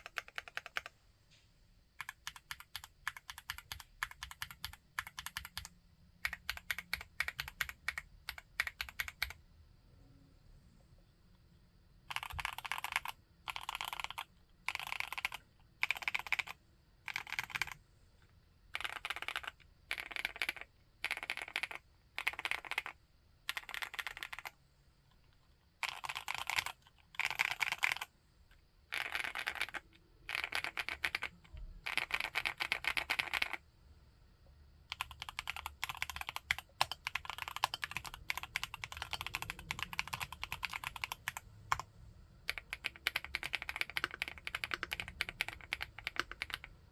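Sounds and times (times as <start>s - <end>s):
mechanical keyboard typing: 0.0s - 1.0s, 2.0s - 9.4s, 12.1s - 17.8s, 18.7s - 24.6s, 25.8s - 28.1s, 28.9s - 33.6s, 34.9s - 41.9s, 42.5s - 46.9s.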